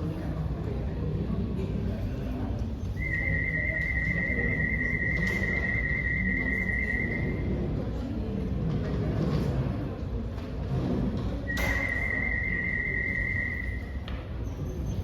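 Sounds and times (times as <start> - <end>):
steady high-pitched test tone: 3.0 - 7.5, 11.5 - 14.0.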